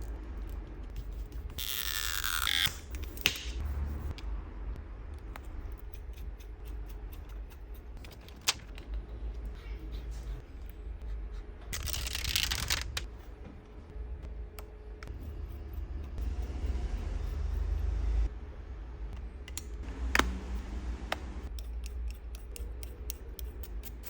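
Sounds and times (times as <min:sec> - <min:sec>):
low steady hum: 0:13.0 - 0:24.0.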